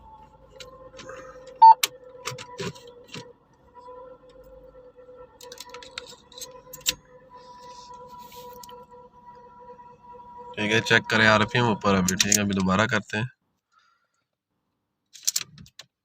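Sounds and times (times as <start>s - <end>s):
car warning chime: 1.6s - 1.9s.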